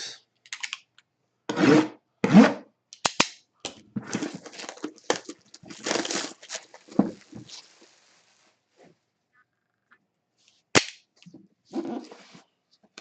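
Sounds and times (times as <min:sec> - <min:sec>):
packaging rustling and tearing: 0:04.1 - 0:08.3.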